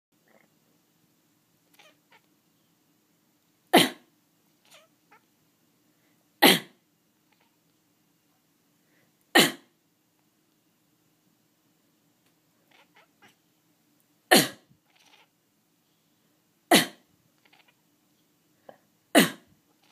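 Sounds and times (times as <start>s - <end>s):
cat meowing: 1.7s - 2.3s, 4.6s - 5.3s, 12.6s - 13.4s, 14.9s - 15.3s, 17.4s - 17.8s
person coughing: 3.8s - 4.0s, 16.7s - 17.0s, 19.2s - 19.5s.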